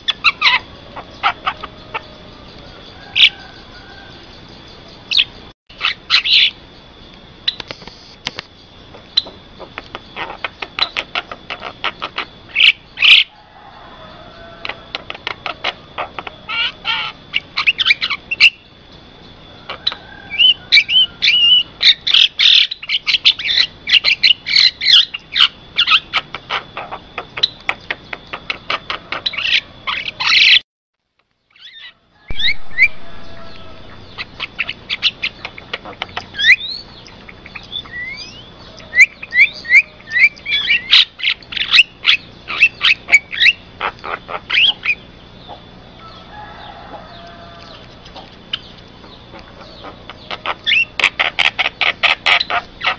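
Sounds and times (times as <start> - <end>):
thin steady high tone: 0.0 - 11.6
bird singing: 0.0 - 30.6, 31.5 - 52.9.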